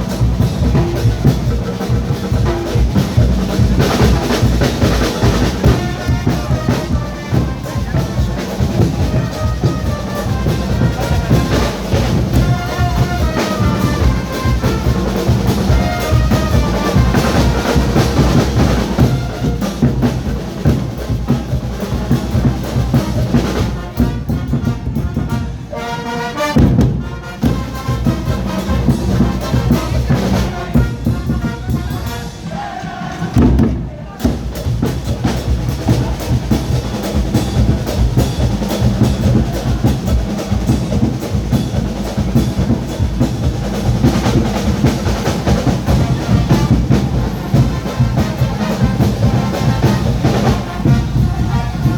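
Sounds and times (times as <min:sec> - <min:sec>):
loud dense drumming: 0:00.0 - 0:25.8, 0:26.4 - 0:51.9
brass horns playing melody: 0:02.1 - 0:21.2, 0:21.8 - 0:33.1, 0:44.1 - 0:51.9.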